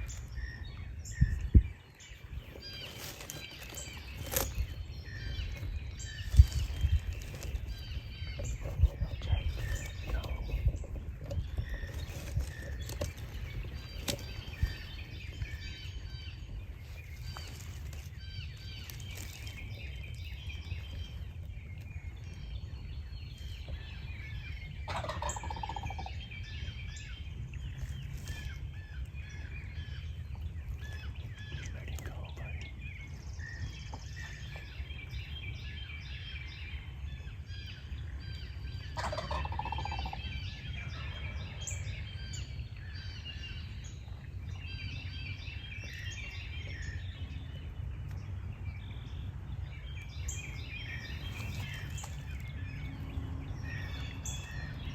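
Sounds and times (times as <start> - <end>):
low outdoor rumble: 0.0 - 54.9
songbirds chirping: 0.0 - 54.9
turkey gobbling: 24.9 - 26.1, 39.0 - 40.2.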